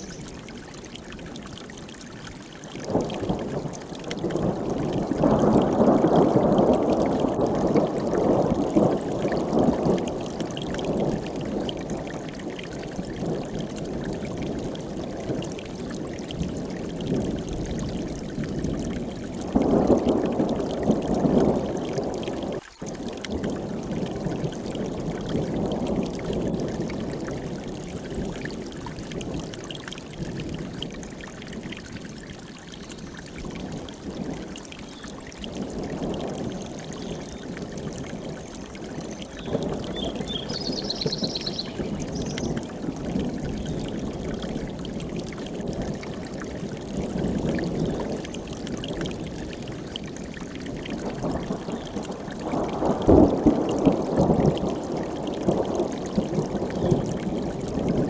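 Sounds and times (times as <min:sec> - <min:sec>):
stream rushing over rocks: 0:00.0 - 0:58.0
high bird trill: 0:40.0 - 0:42.5.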